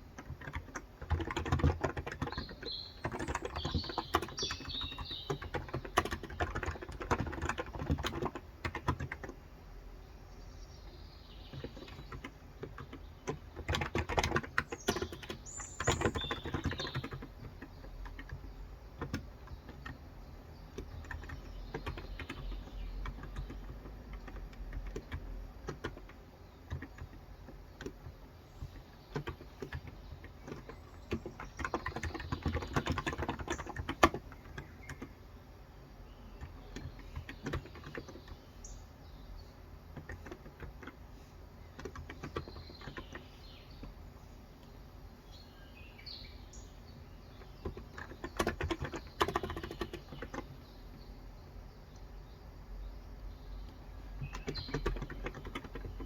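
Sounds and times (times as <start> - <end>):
keyboard typing: 0.0 - 9.4, 11.4 - 35.1, 36.3 - 38.4, 39.9 - 43.4, 47.4 - 50.6, 53.6 - 56.0
birds chirping: 0.0 - 56.0.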